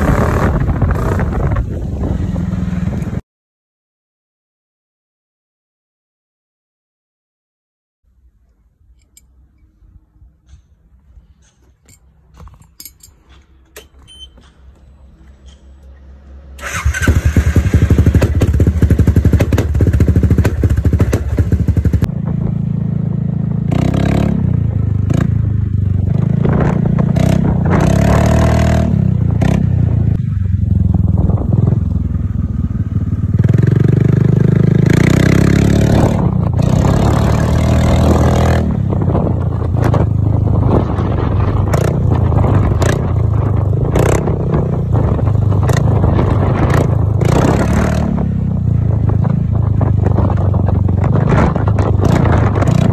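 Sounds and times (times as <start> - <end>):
motor scooter engine revving: 0.0 - 3.2, 16.5 - 22.1, 33.2 - 39.2, 41.7 - 48.5.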